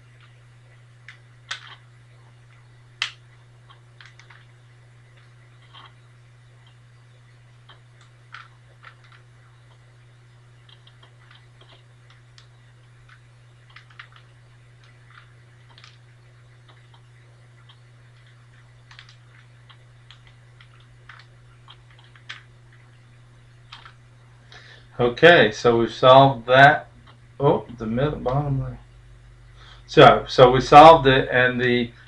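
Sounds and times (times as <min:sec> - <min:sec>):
low hum: 0:00.0 - 0:32.0
plastic cube clicking and snapping: 0:01.1 - 0:01.8.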